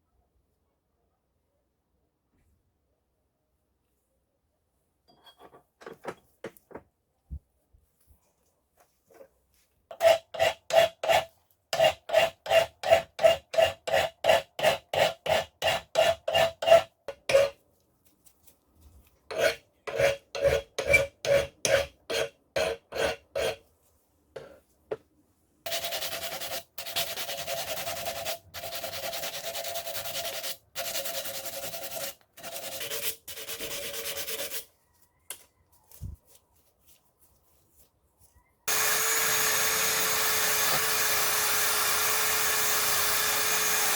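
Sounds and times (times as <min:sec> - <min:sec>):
hand file rasping on steel: 0:09.9 - 0:17.6, 0:19.3 - 0:23.6, 0:25.7 - 0:34.7
power tool running: 0:38.7 - 0:43.9.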